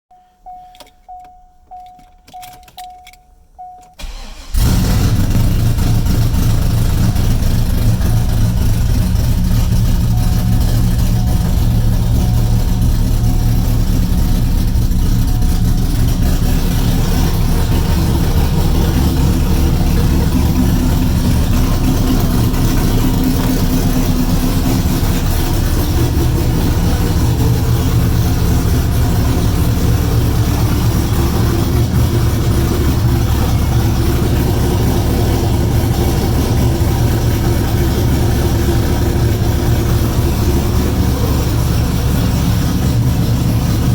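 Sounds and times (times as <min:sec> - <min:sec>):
short electronic beep: 0:00.1 - 0:04.0, 0:10.1 - 0:13.8
car engine starting and idling: 0:00.2 - 0:43.9.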